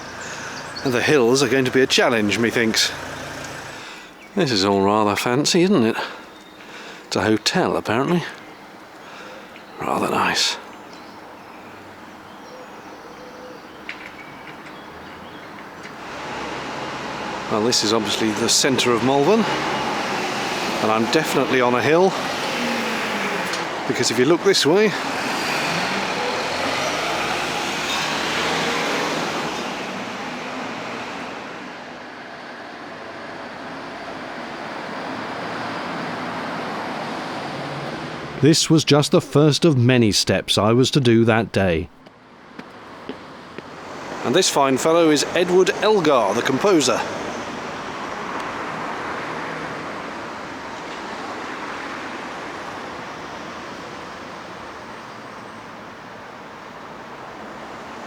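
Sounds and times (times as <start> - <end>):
general road traffic: 0.0 - 58.0.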